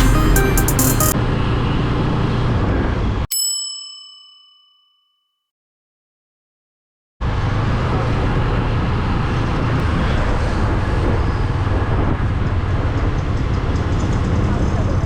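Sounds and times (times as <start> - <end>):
traffic noise: 0.0 - 3.3, 7.2 - 15.0
wind rumble on microphone: 7.8 - 15.0.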